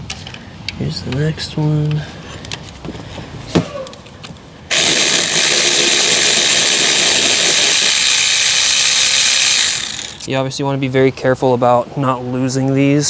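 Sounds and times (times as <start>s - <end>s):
power tool whirring: 4.7s - 10.3s.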